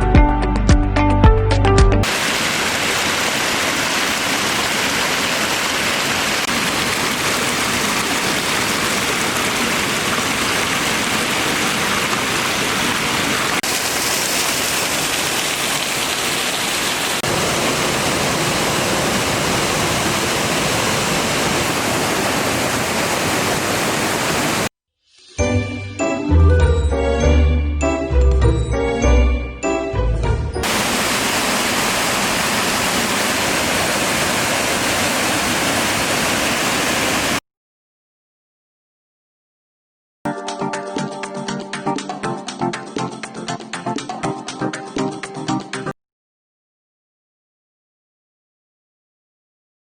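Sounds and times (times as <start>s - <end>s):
waterfall rushing: 2.0s - 24.7s, 30.6s - 37.4s.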